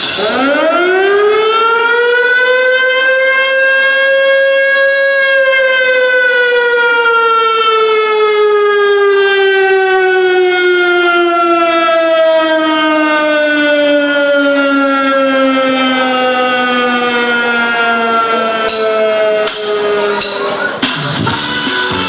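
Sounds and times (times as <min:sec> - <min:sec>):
siren wailing: 0:00.0 - 0:22.0
music: 0:20.8 - 0:22.0.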